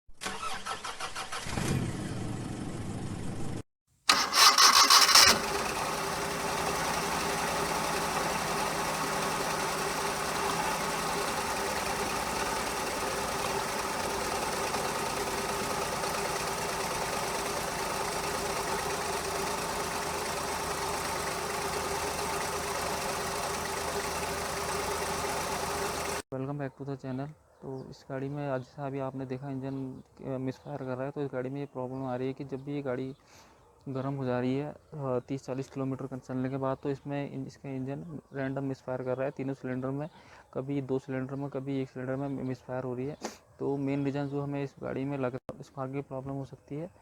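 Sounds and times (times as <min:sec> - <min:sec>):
car engine starting and idling: 0:04.1 - 0:26.2
engine misfiring: 0:04.1 - 0:26.2.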